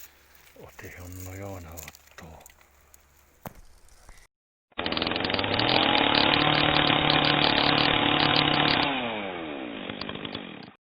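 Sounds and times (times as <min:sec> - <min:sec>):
chainsaw revving: 0:04.7 - 0:10.8.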